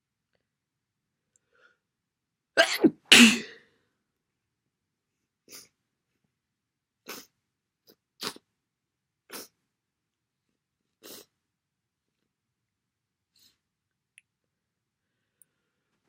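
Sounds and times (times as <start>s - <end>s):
quiet nasal sniffs: 7.0s - 7.3s, 9.3s - 9.6s, 11.0s - 11.4s, 13.3s - 13.6s.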